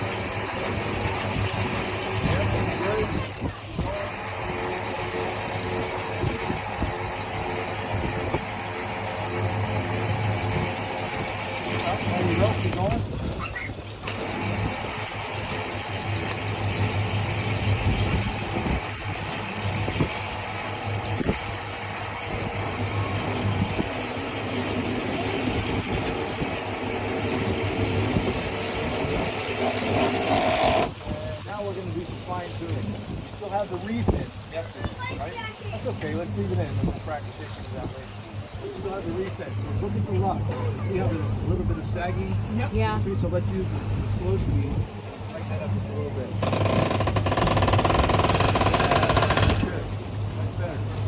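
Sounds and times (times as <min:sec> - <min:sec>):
boat engine humming: 0:00.0 - 0:51.0
wind noise: 0:12.2 - 0:14.0, 0:17.7 - 0:20.2.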